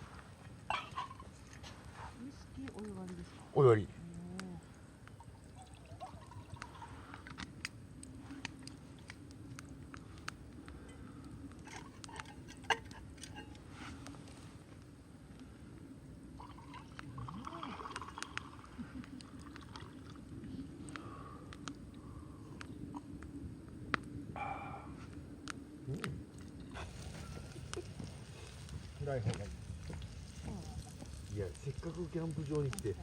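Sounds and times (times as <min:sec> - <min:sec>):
campfire crackling and popping: 0:00.0 - 0:33.0
low steady fire rush: 0:00.0 - 0:33.0.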